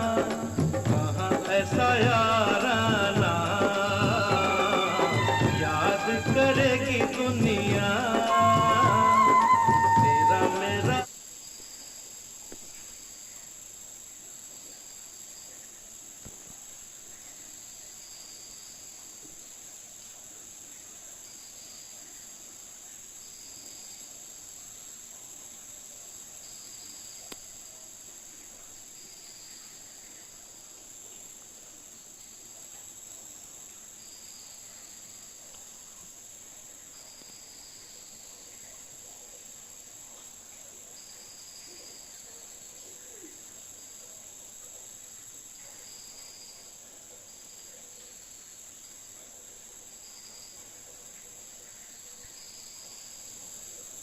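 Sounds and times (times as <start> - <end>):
crickets chirring: 0.0 - 54.0
insect short chirps: 32.1 - 49.0.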